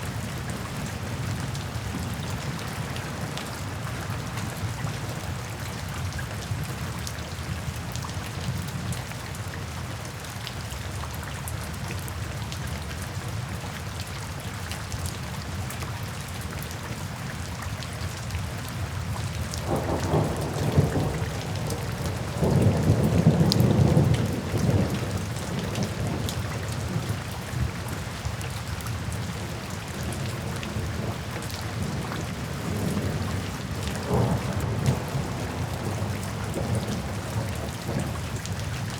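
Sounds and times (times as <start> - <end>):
rain on a window: 0.0 - 38.9
rolling thunder: 19.6 - 27.1, 31.7 - 38.9.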